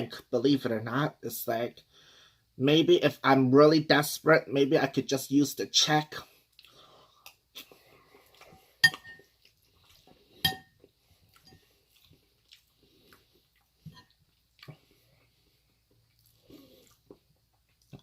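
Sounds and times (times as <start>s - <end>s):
soft chewing: 6.3s - 18.0s
metal utensil clinking on dish: 8.8s - 9.2s, 10.4s - 10.7s.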